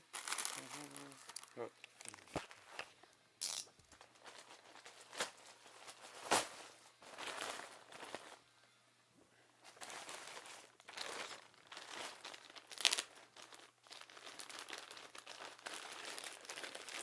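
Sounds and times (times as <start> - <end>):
packaging crinkling and rustling: 0.0 - 3.0, 3.9 - 8.4, 9.6 - 17.0
packaging tearing: 0.1 - 2.4, 9.7 - 17.0.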